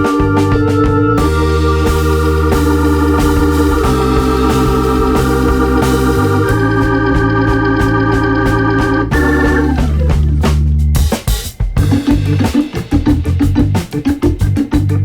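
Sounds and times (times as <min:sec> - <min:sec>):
electric organ chords: 0:00.0 - 0:15.0
moving bass line: 0:00.0 - 0:15.0.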